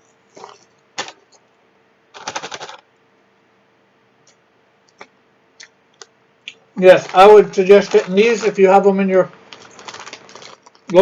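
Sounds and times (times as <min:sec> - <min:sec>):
potato chips crunching: 0:06.8 - 0:08.9, 0:09.5 - 0:11.0.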